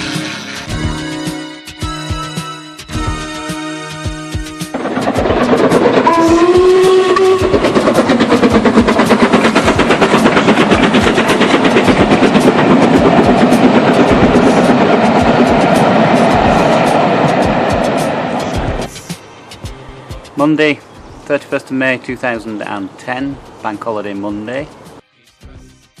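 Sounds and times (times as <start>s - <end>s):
music: 0.0s - 26.0s
train whistle: 2.9s - 9.2s
train clattering: 4.6s - 18.9s.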